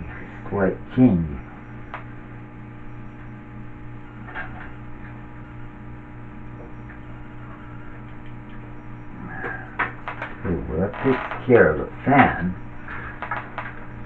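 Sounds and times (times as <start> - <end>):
steady low hum: 0.0 - 14.0
cables and connectors rustling: 12.2 - 14.0.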